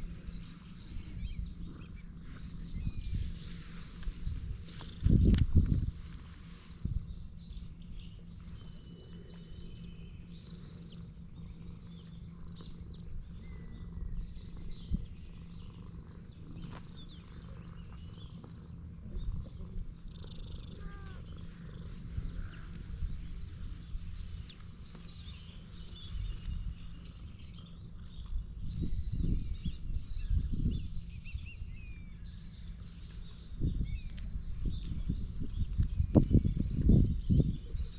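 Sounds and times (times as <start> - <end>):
cat purring: 0.0 - 30.0.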